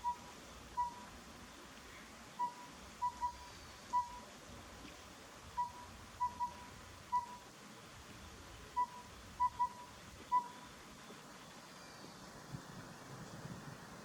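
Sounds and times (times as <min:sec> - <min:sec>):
owlet whistled hoots: 0:00.8 - 0:01.0, 0:02.4 - 0:04.2, 0:05.6 - 0:07.4, 0:08.8 - 0:10.6.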